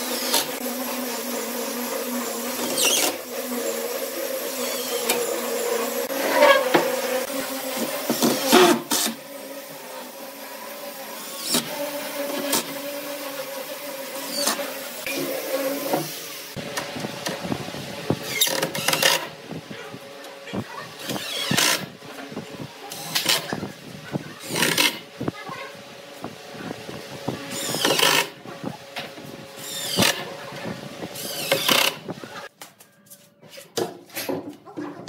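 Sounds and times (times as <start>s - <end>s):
small motor humming: 0.0s - 32.5s
power tool bursts: 4.4s - 13.3s, 27.4s - 28.4s.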